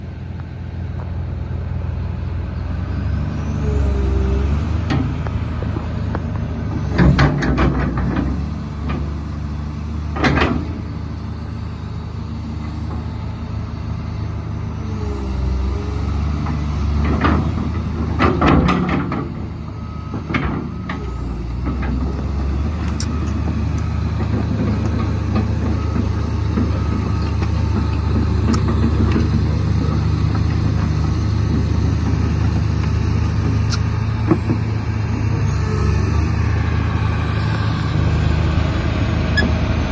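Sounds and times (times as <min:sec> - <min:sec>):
excavator diesel engine running: 0:00.0 - 0:39.9.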